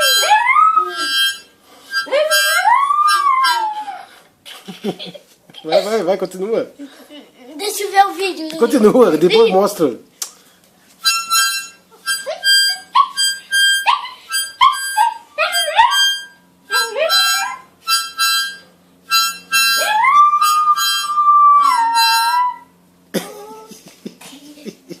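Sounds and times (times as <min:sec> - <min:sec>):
dog howling: 0:00.0 - 0:01.4, 0:02.1 - 0:04.1, 0:12.8 - 0:17.7, 0:19.6 - 0:22.8
dog whining: 0:00.0 - 0:04.2, 0:11.0 - 0:23.8
harmonica chords: 0:00.0 - 0:04.2, 0:11.0 - 0:23.4.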